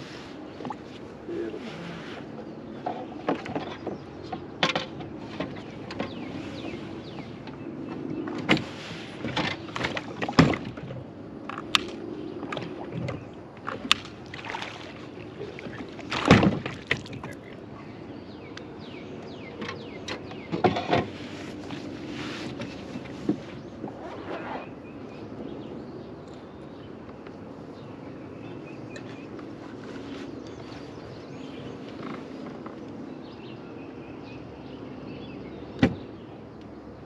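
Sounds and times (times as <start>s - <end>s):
water splashing and sloshing: 0.0s - 17.9s.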